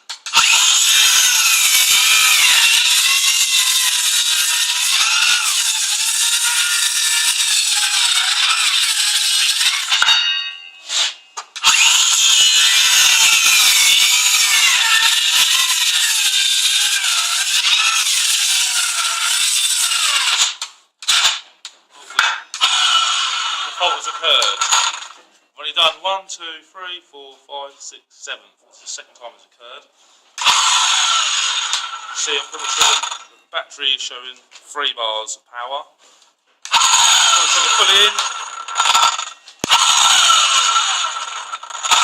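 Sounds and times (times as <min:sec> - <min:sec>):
circular saw cutting timber: 0:00.2 - 0:21.3, 0:22.1 - 0:25.2, 0:30.4 - 0:33.4, 0:36.7 - 0:42.0.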